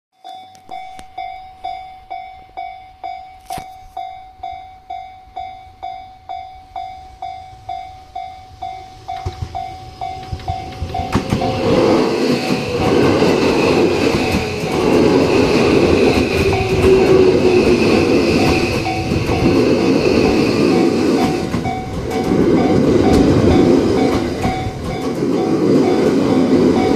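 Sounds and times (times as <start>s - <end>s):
level-crossing warning bell: 0.2s - 26.9s
train rumbling on rails: 1.0s - 26.9s.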